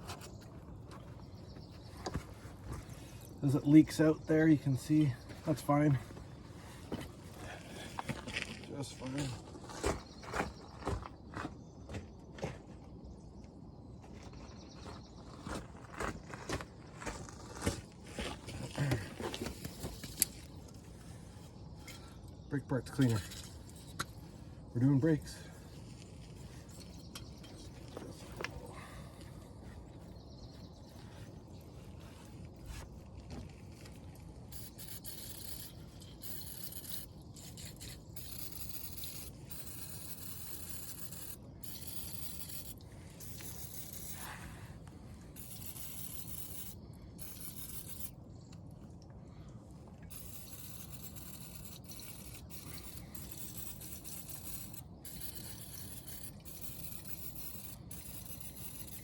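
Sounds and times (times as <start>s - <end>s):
aerosol can spraying: 34.5s - 44.4s, 45.4s - 48.2s, 50.1s - 59.0s.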